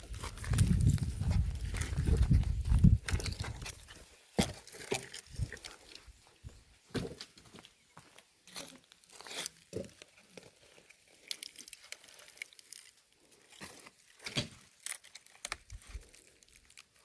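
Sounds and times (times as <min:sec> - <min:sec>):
dry branches rustling and knocking: 0:00.0 - 0:06.1.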